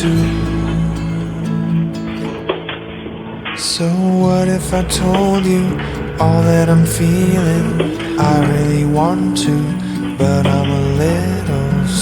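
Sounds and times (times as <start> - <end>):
slow tender pop song: 0.0 - 12.0.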